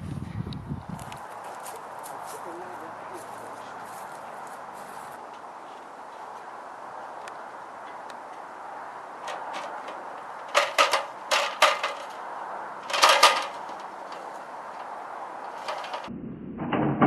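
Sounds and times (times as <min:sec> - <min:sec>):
clattering knocks: 0:09.2 - 0:16.1.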